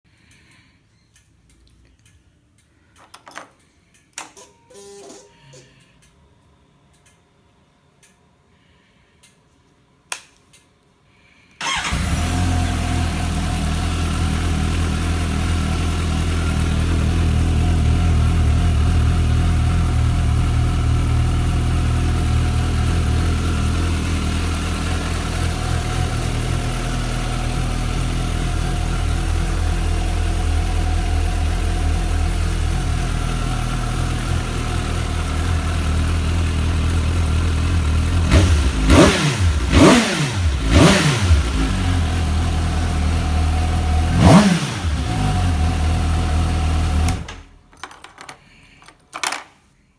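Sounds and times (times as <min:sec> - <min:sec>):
clicks: 0:06.9 - 0:07.3
motorcycle engine starting and idling: 0:11.6 - 0:48.6.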